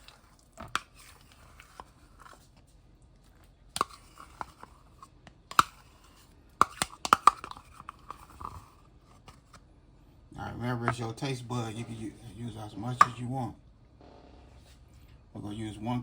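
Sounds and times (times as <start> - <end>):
spoon scraping a container: 0.0 - 2.6, 3.8 - 9.5.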